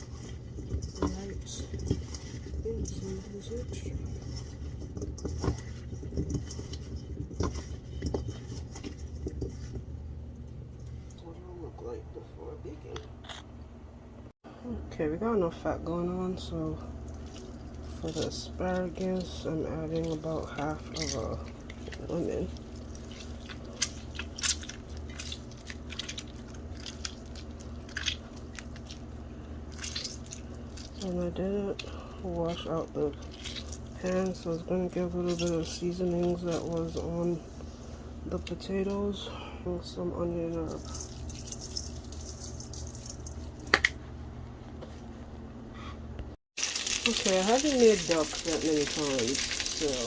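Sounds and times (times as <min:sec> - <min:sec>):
steady low hum: 0:00.0 - 0:46.4.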